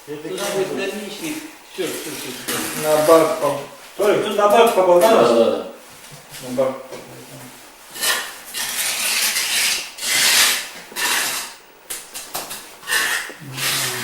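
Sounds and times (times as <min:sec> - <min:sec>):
rough scraping strokes: 0:07.9 - 0:11.6, 0:12.8 - 0:14.0.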